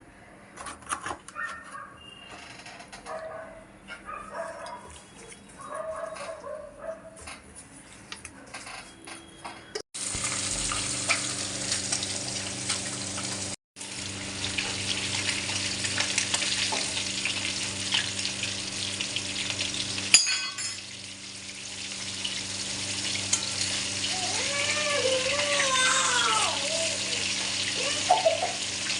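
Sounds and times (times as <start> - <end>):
fish sizzling in hot oil: 10.0 - 28.9.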